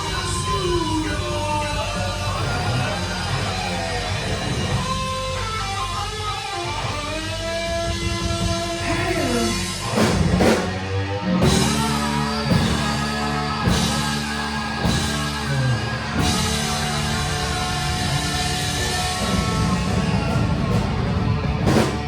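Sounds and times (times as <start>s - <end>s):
electric guitar slide: 0.0s - 22.0s
rock band heavy riff: 0.0s - 22.0s
drum hits: 11.4s - 22.0s.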